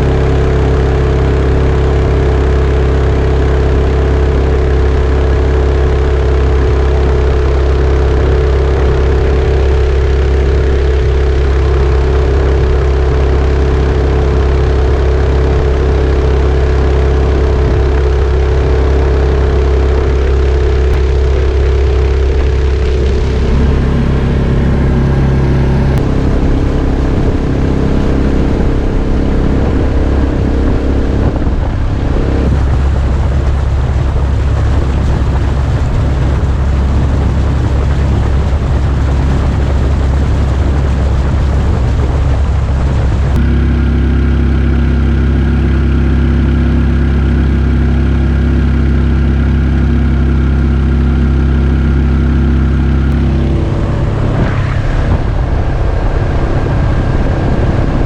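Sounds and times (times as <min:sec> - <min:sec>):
boat engine running: 0:00.0 - 0:58.0.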